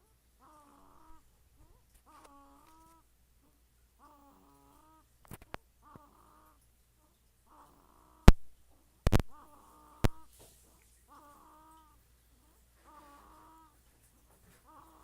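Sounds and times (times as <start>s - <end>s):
pet snoring with whistling squeaks: 4.0s - 5.0s, 6.0s - 6.6s, 7.5s - 8.2s, 12.9s - 13.8s, 14.6s - 15.0s
faint clicks: 8.3s - 10.3s.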